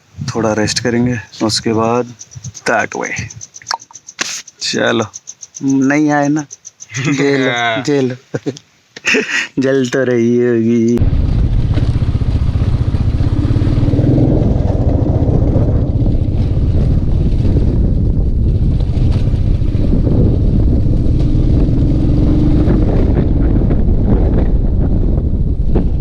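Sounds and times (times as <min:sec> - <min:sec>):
wind buffeting microphone: 0:00.0 - 0:03.6, 0:11.0 - 0:26.0
motorcycle engine running: 0:11.0 - 0:26.0.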